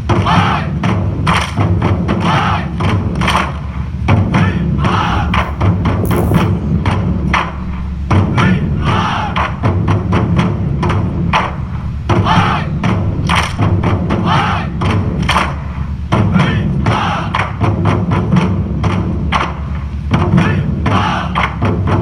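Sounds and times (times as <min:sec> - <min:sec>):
heavy thumping beat: 0:04.9 - 0:06.5.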